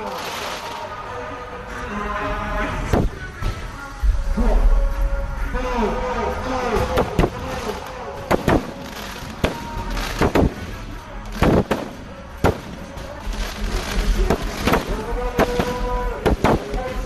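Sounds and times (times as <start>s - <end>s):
crowd voices or music: 0.0s - 17.0s
fireworks bangs: 6.8s - 17.0s.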